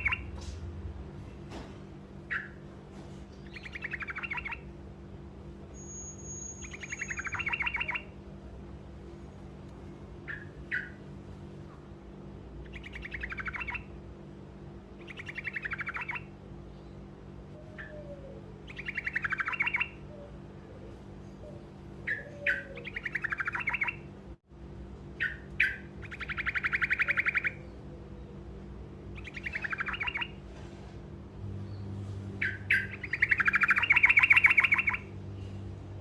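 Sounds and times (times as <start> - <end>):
bird sharp chirps: 0.0 - 0.3, 3.4 - 4.7, 5.7 - 8.1, 15.0 - 16.3, 18.7 - 20.0, 25.2 - 27.7, 29.2 - 30.4, 32.4 - 35.1
low steady hum: 0.0 - 36.0
songbird rattling trills: 5.8 - 8.1.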